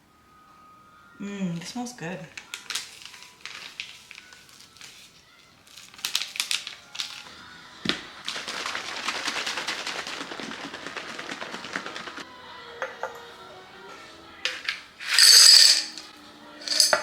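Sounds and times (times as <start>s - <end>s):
shaker cup rattling: 8.2s - 12.2s, 14.5s - 17.0s.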